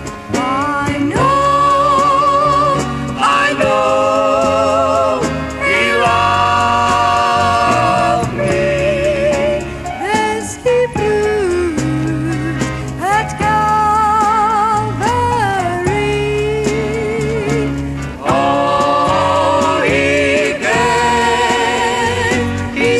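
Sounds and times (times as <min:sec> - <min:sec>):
instrumental backing: 0:00.0 - 0:22.9
gospel singing: 0:00.4 - 0:11.1, 0:15.8 - 0:22.9.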